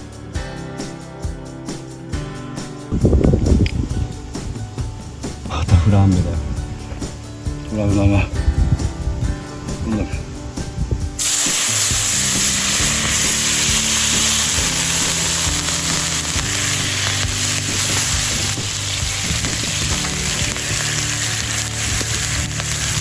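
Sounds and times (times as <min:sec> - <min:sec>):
steak sizzling in a hot pan: 0:08.8 - 0:23.0.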